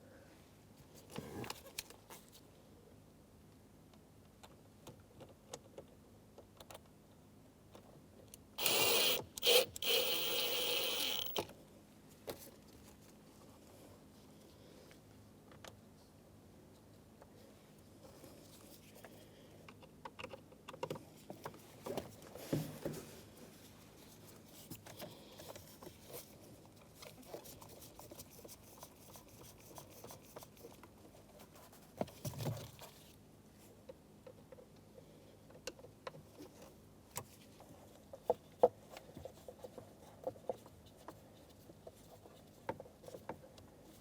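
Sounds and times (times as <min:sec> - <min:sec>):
small clicks and taps of tools: 0:19.7 - 0:22.1.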